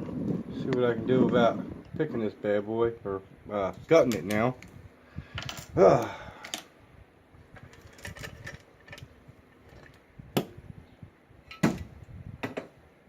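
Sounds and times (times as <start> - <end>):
small metal parts clicking: 7.6 - 10.0.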